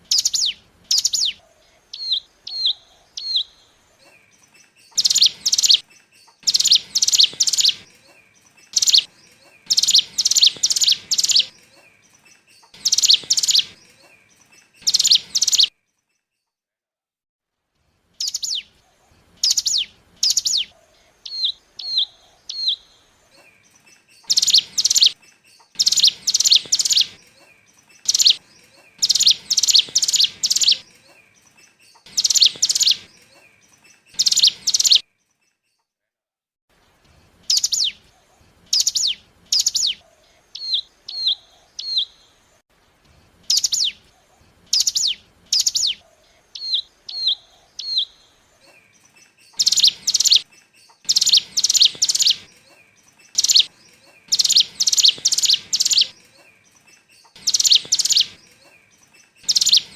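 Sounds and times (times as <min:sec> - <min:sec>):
bird chirps sweeping down: 0:12.8 - 0:13.9, 0:32.1 - 0:33.2, 0:57.3 - 0:58.5.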